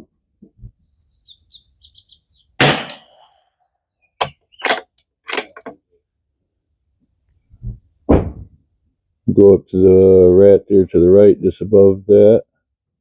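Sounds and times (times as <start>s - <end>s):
birds chirping: 0.6s - 5.7s
rifle shot: 2.6s - 3.2s.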